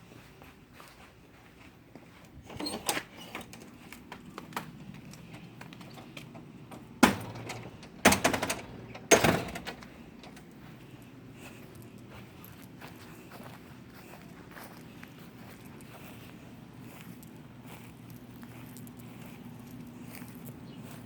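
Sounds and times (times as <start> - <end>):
door rattling: 2.4 - 10.5
door clunking shut: 2.4 - 10.6.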